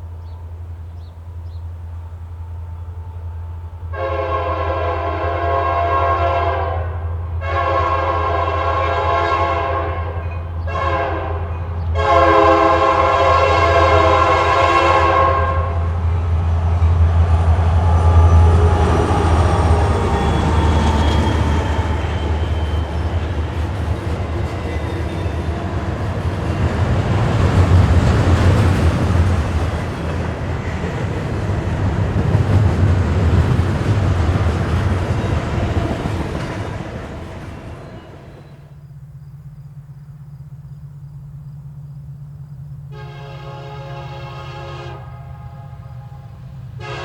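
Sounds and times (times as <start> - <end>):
train air horn: 3.9 - 16.0, 17.6 - 23.3, 42.9 - 47.0
railcars clattering on track: 7.2 - 14.7, 15.8 - 43.1
locomotive low rumble: 8.1 - 44.3.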